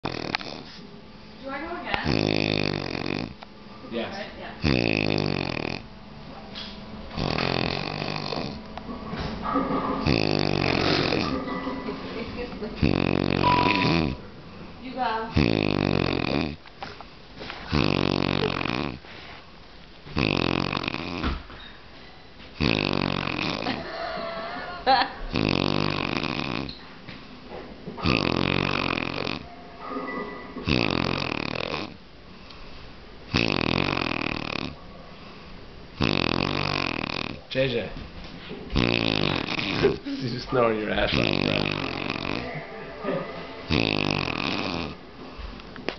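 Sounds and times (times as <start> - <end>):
person snoring loudly: 0.0 - 0.7, 2.0 - 3.4, 4.6 - 5.8, 7.1 - 8.6, 10.0 - 11.4, 12.8 - 14.2, 15.3 - 16.6, 17.7 - 19.0, 20.1 - 21.3, 22.6 - 23.9, 25.3 - 26.7, 28.0 - 29.5, 30.6 - 32.0, 33.3 - 34.8, 36.0 - 37.4, 38.8 - 40.0, 41.1 - 42.6, 43.7 - 45.0
quiet breathing: 19.0 - 19.6, 32.2 - 33.1, 34.7 - 35.8, 41.1 - 45.8.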